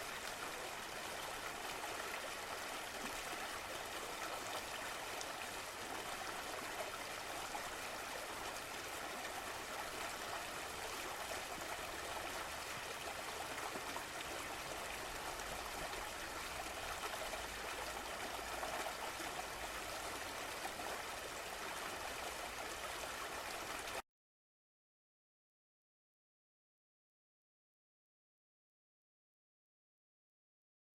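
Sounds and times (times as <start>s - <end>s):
running water rushing: 0.0s - 24.0s.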